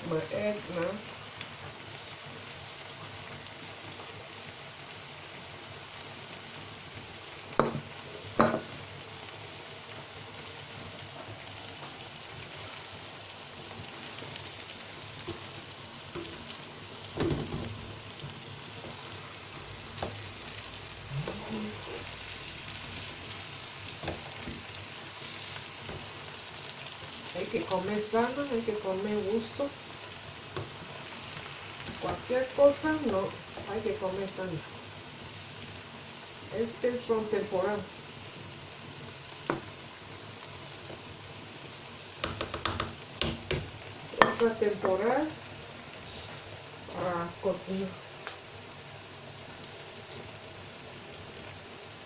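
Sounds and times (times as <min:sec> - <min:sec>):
stew sizzling in hot oil: 0:00.0 - 0:52.0.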